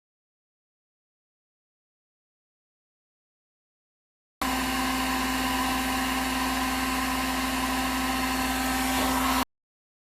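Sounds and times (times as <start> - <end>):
electric blower motor whine: 4.4 - 9.5.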